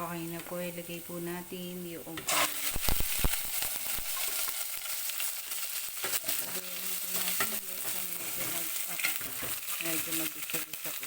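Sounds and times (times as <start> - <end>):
chicken sizzling in hot oil: 2.2 - 11.0
utensil scraping and knocking pot: 6.0 - 9.9.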